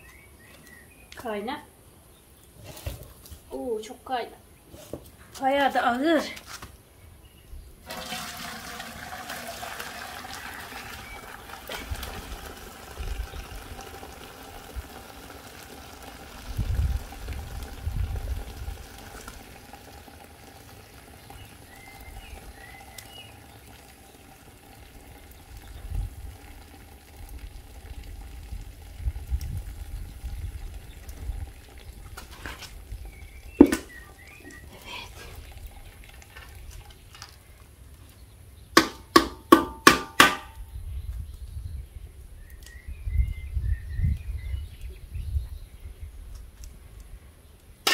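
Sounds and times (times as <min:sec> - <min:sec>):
liquid pouring and splashing: 0:07.8 - 0:37.5
sharp knock: 0:38.8 - 0:40.6.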